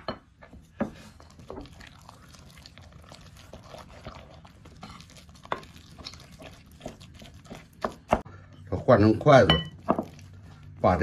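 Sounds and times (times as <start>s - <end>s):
sticky rice squelching: 0.9s - 8.3s.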